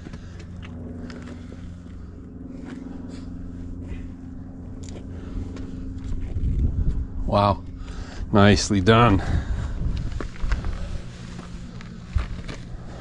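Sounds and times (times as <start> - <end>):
footsteps and scuffs on rock: 0.0 - 3.3, 9.8 - 13.0
steady low drone: 0.0 - 13.0.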